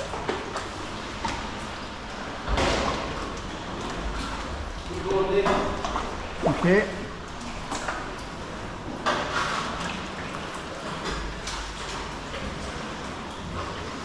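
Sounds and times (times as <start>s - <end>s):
sea water sloshing: 0.0s - 14.0s
soft splashes: 0.0s - 14.0s.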